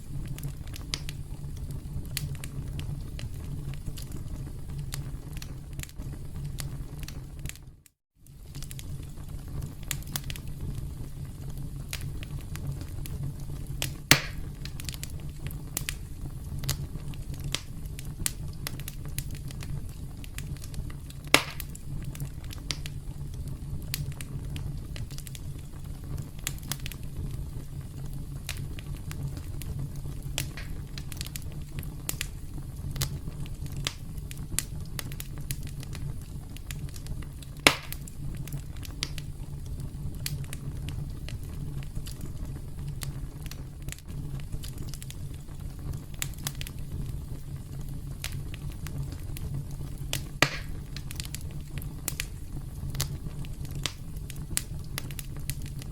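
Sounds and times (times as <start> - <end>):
campfire crackling: 0.0 - 55.9
fire pops: 0.0 - 55.9
low rumble of flames: 0.0 - 55.9.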